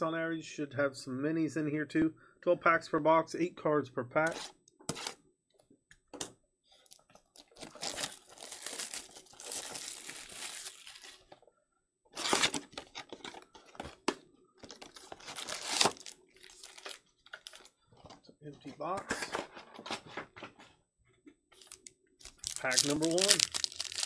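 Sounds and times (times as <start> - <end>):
packaging tearing and crinkling: 6.9 - 11.3, 14.9 - 17.7, 21.6 - 24.0.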